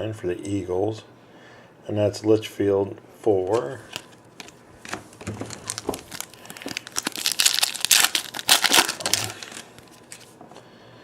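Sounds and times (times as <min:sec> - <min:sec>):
foil wrapper crinkling and tearing: 0:03.9 - 0:10.3.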